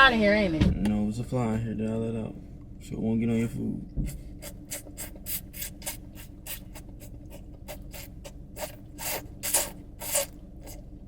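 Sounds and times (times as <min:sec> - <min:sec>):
open-mouthed chewing and lip-smacking: 0:04.4 - 0:11.0.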